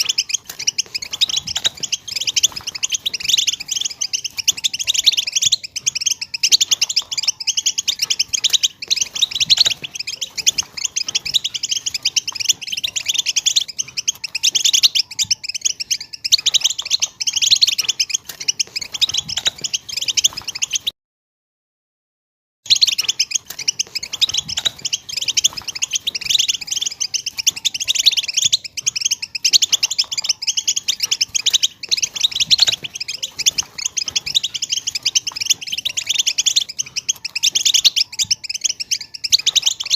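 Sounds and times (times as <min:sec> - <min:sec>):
finch twittering song: 0:00.0 - 0:20.9, 0:22.7 - 0:39.9.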